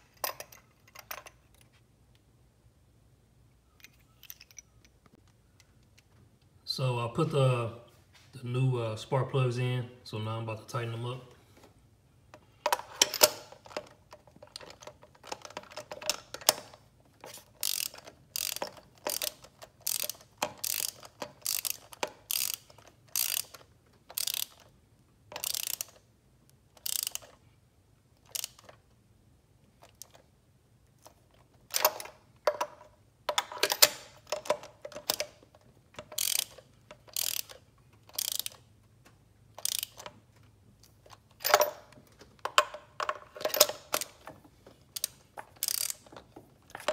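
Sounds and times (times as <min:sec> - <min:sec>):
ratchet wrench clicking: 0:17.4 - 0:24.7, 0:25.3 - 0:26.1, 0:26.8 - 0:27.4, 0:28.3 - 0:28.7, 0:36.0 - 0:38.7, 0:39.6 - 0:40.2, 0:45.0 - 0:46.1.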